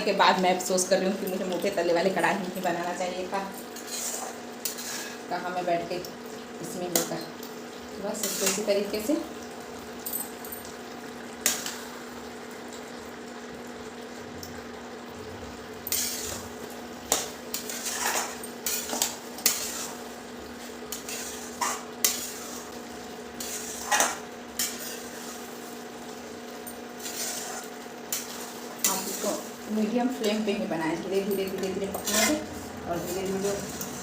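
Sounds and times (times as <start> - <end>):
low frying sizzle: 0.0 - 34.0
steady hum: 0.0 - 34.0
spoon scraping a pan: 3.6 - 5.3, 8.1 - 8.9, 15.8 - 22.8, 23.4 - 25.8, 27.0 - 30.6, 31.5 - 34.0.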